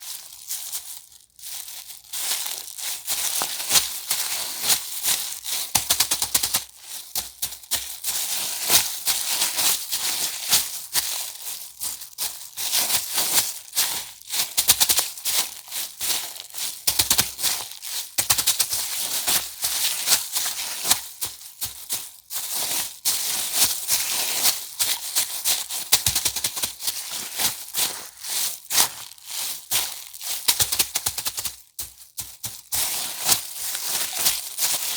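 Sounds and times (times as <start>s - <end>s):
plastic bag crinkling: 0.0s - 14.3s, 23.7s - 34.9s.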